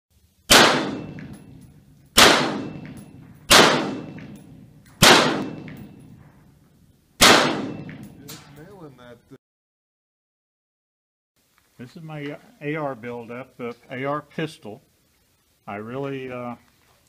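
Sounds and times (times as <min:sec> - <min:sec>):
gunshots echoing: 0:00.5 - 0:06.6, 0:07.2 - 0:08.5.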